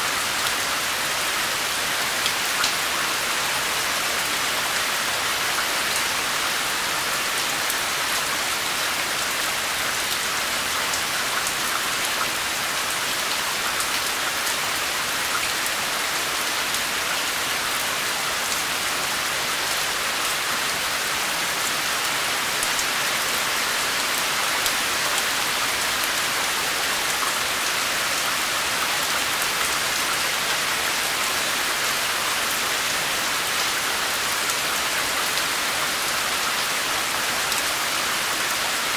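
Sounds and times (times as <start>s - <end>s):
rain pattering on a surface: 0.2s - 38.9s.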